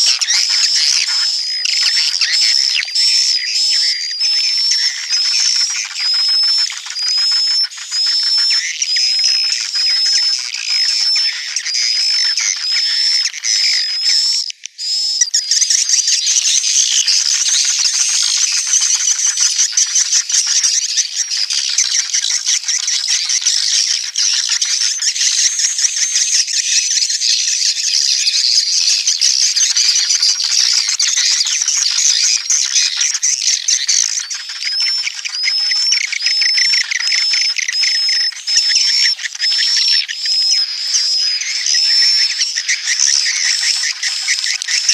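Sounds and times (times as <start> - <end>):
steady high whistle tone: 0.0 - 20.0, 31.8 - 44.9
swiftlets twittering chirps: 0.0 - 44.9.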